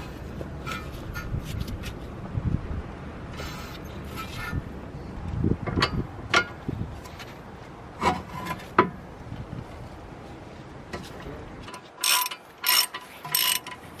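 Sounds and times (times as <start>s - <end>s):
metal rubbing and scraping: 0.0s - 2.2s, 3.3s - 4.8s
hand tools clinking on metal: 11.7s - 13.9s.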